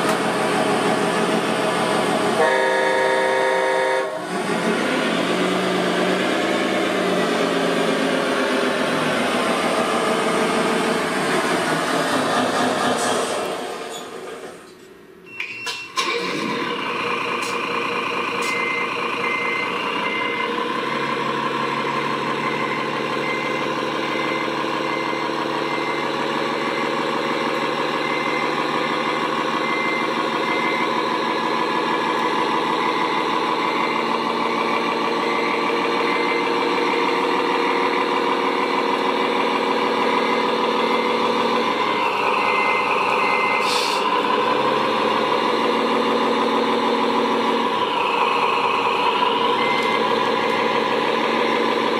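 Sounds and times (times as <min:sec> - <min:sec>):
high reversing beeper: 0:40.2 - 0:44.1.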